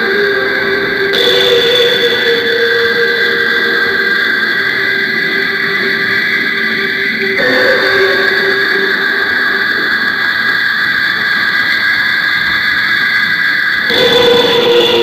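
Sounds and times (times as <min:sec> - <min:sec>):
synthesized alien voice drone: 0:00.0 - 0:11.2, 0:13.8 - 0:15.0.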